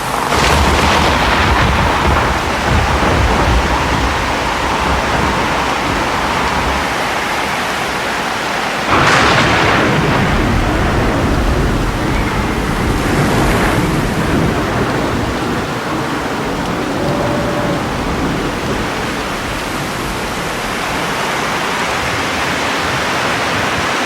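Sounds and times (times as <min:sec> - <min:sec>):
heavy rain falling: 0:00.0 - 0:24.0
thunderclap rumbling: 0:00.0 - 0:24.0.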